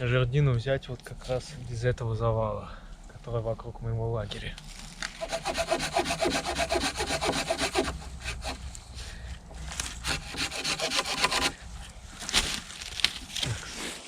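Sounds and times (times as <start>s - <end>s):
hand saw cutting wood: 5.1s - 8.7s, 9.6s - 11.6s.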